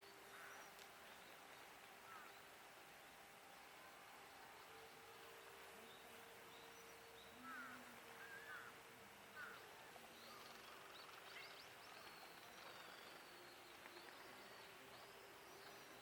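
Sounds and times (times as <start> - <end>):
distant small birds chirping: 0.0 - 16.0.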